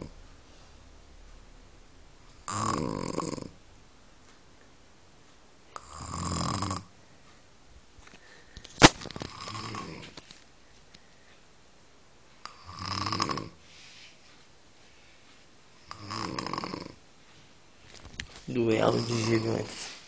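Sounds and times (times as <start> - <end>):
woman snoring: 2.4 - 3.6, 5.8 - 6.9, 9.3 - 10.1, 12.5 - 13.6, 15.8 - 17.0, 18.9 - 19.7
sharp click: 8.6 - 9.2.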